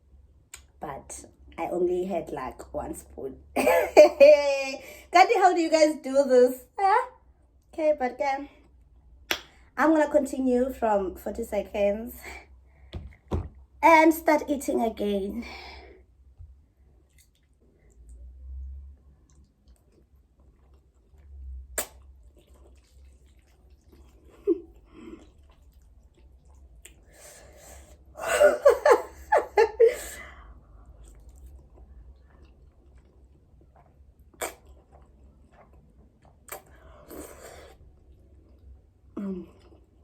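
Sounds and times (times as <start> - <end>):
person chewing: 16.9 - 18.3, 19.0 - 28.0, 30.7 - 40.0
slurping and breathing: 22.2 - 28.3, 29.9 - 40.0.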